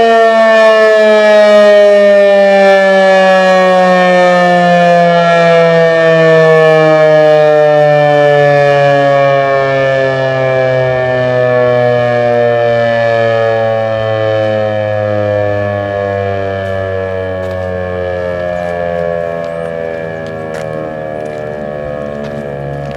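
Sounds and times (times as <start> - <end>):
warning siren winding down: 0.0 - 22.9.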